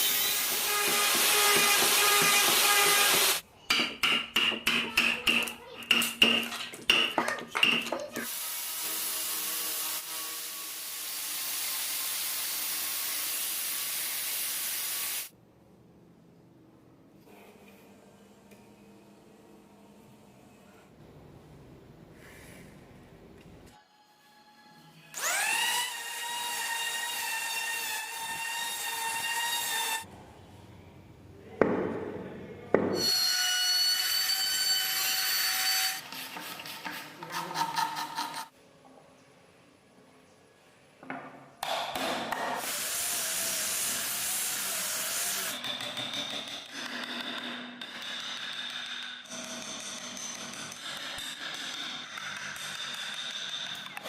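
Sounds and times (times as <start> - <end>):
tool grinding wood: 0.0 - 3.4, 33.0 - 38.5.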